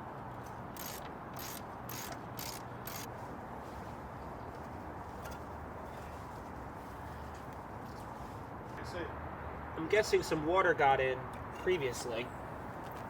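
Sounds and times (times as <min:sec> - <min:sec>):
ratchet wrench clicking: 0:00.8 - 0:03.1.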